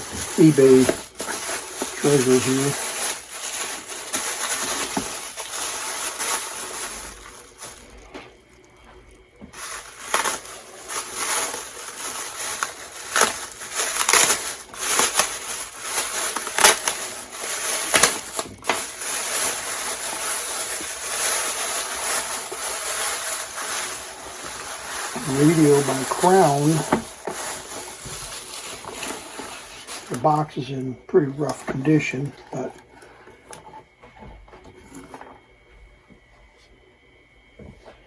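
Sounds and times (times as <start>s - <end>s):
steady high hiss: 0.0s - 7.8s.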